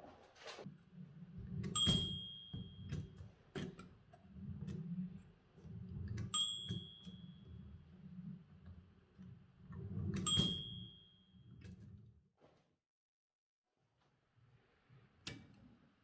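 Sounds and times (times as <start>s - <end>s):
typewriter bell ding: 1.8s - 2.6s, 6.4s - 7.2s, 10.3s - 11.0s.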